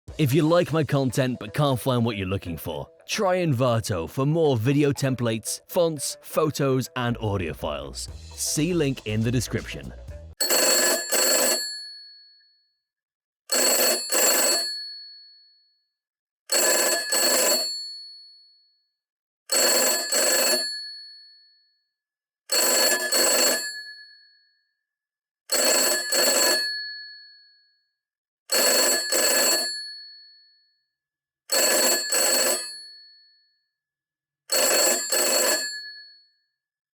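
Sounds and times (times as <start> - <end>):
old telephone bell ringing: 10.4 - 12.2, 13.5 - 15.0, 16.5 - 18.0, 19.5 - 21.1, 22.5 - 24.1, 25.5 - 27.2, 28.5 - 30.2, 31.5 - 33.1, 34.5 - 36.2.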